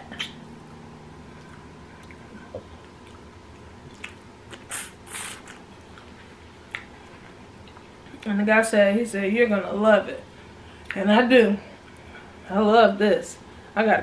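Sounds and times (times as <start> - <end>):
person chewing wetly: 0.2 - 4.7, 5.4 - 8.2.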